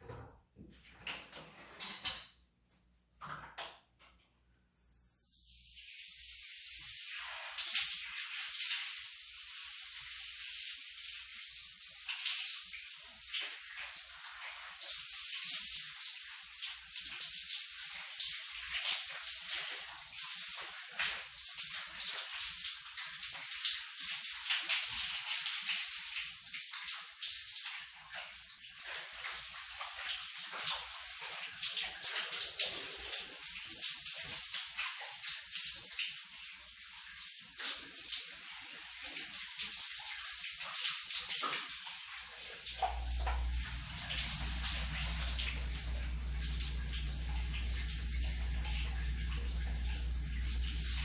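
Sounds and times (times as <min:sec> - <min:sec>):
shower water spraying: 0:05.1 - 0:51.0
low steady hum: 0:42.8 - 0:51.0.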